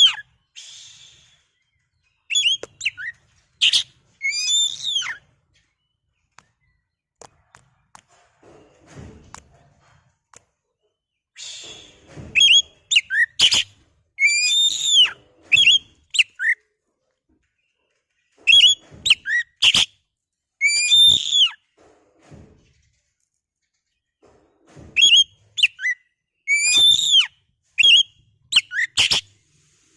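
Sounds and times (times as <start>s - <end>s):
bird singing whistled phrases: 2.3s - 5.2s, 20.6s - 21.5s, 25.0s - 29.2s.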